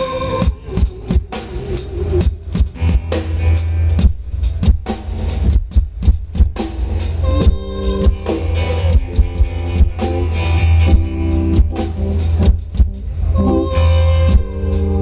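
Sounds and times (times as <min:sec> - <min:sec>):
sustained guitar chords: 0:07.2 - 0:15.0.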